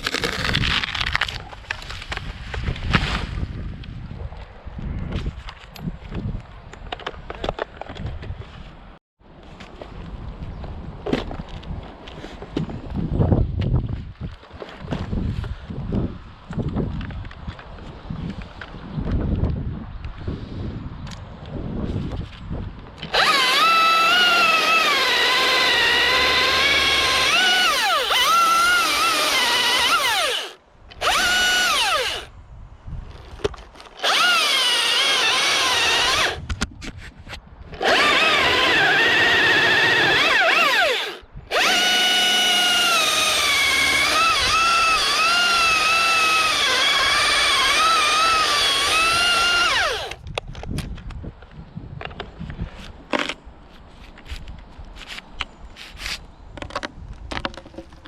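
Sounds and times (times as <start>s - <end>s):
chainsaw cutting wood: 23.0s - 32.3s, 34.0s - 36.5s, 37.8s - 50.2s.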